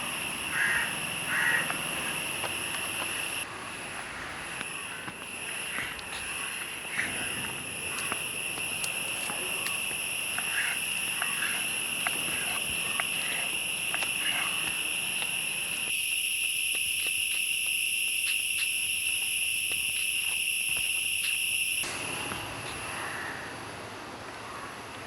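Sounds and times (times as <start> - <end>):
insects trilling: 0.0 - 23.7.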